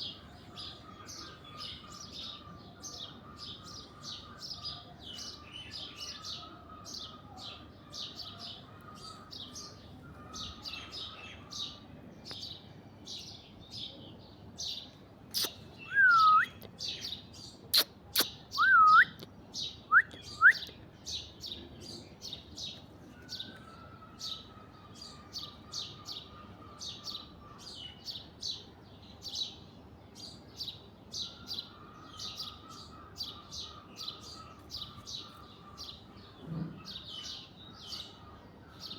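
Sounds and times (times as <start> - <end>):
birds chirping: 0.0 - 38.9.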